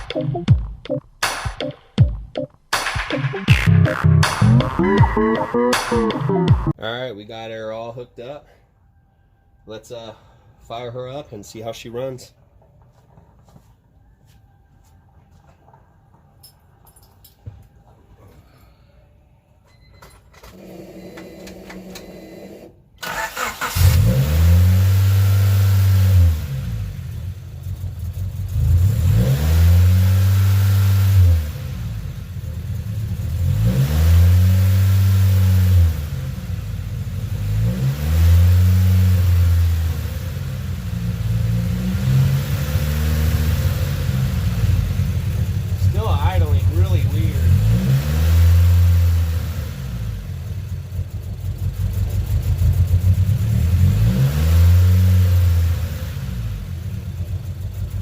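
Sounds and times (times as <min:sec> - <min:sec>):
car engine starting and revving: 0:20.4 - 0:58.0.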